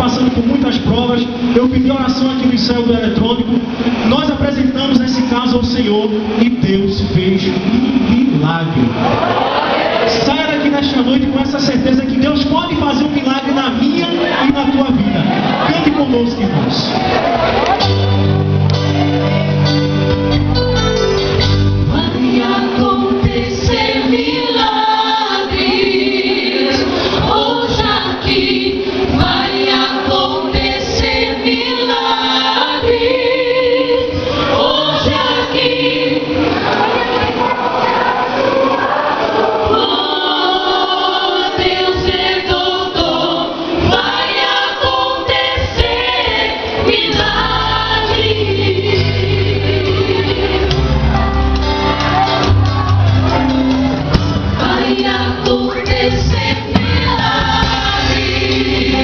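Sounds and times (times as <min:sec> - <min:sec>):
choir singing gospel song: 0:00.0 - 0:20.3, 0:21.2 - 0:59.0
deep bass: 0:16.6 - 0:23.9, 0:45.9 - 0:59.0
instrumental accompaniment: 0:17.0 - 0:37.9, 0:38.6 - 0:59.0.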